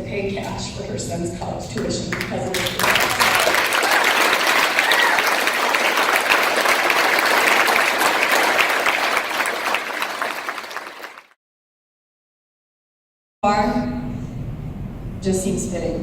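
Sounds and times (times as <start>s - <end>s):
audience applauding: 1.8s - 11.4s.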